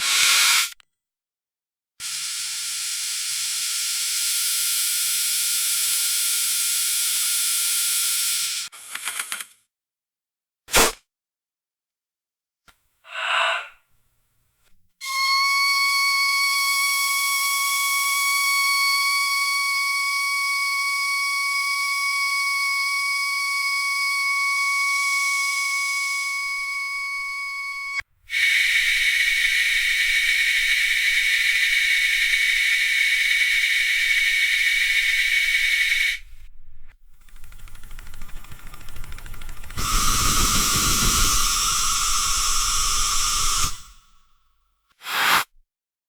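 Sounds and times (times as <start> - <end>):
high-pitched whistle: 15.0 - 36.3, 39.8 - 44.1
loud steady hiss: 39.8 - 44.0
short burst: 45.0 - 45.5.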